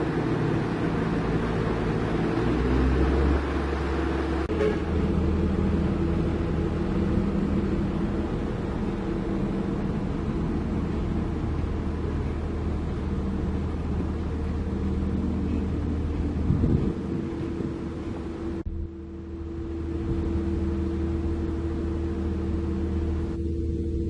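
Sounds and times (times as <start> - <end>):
heavy diesel engine drone: 0.0 - 24.0.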